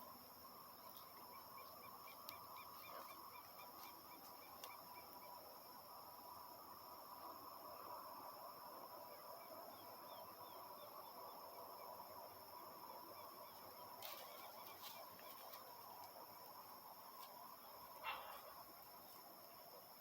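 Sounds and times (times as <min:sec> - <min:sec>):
insects droning: 0:00.0 - 0:20.0
faint bird chirps: 0:00.7 - 0:05.4.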